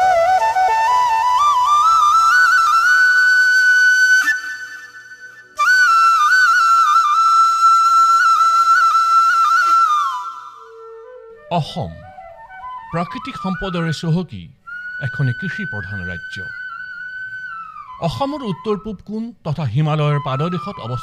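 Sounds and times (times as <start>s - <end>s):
solo flute melody: 0.0s - 21.0s.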